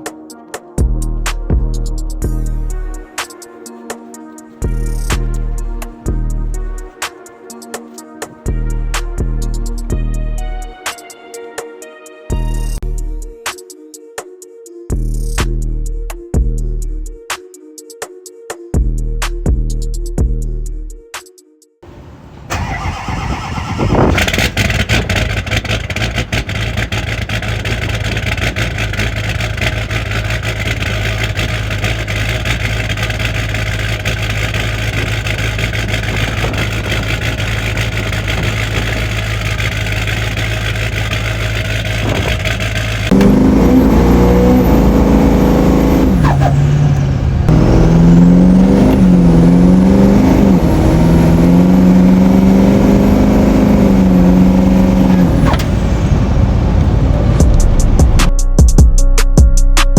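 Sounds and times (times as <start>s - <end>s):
diesel engine starting and idling: 4.6s - 7.0s, 21.9s - 58.4s
engine revving: 4.6s - 7.0s, 21.9s - 58.3s.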